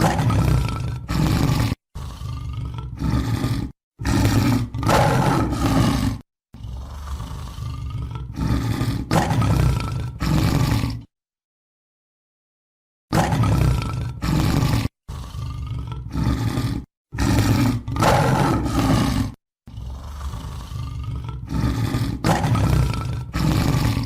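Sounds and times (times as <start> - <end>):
tiger roaring and growling: 0.0 - 11.1, 13.1 - 24.0.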